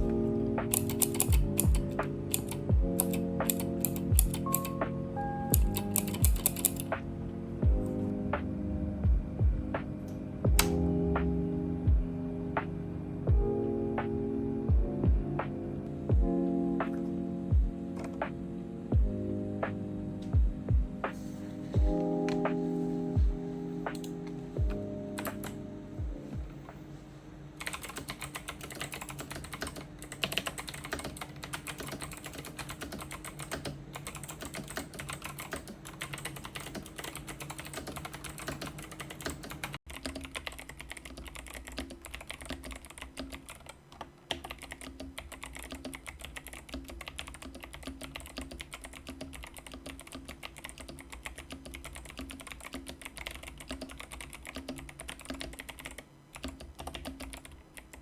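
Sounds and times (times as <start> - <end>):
mechanical keyboard key clicks: 10.6 - 10.8.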